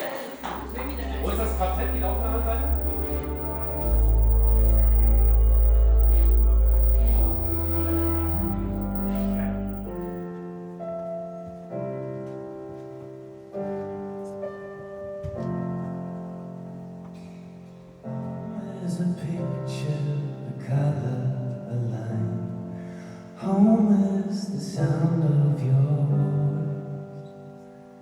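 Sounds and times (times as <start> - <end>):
piano playing slow chords: 0.0 - 12.7.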